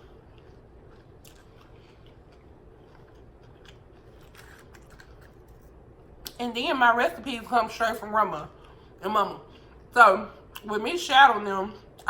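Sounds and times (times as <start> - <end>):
faint chewing: 0.0 - 6.4.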